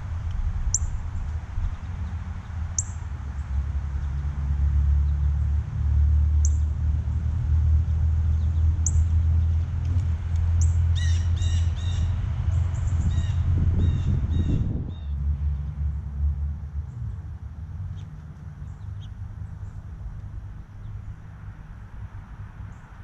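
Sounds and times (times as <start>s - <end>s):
steady low rumble: 0.0s - 23.0s
birds chirping: 10.5s - 15.2s, 17.9s - 21.2s.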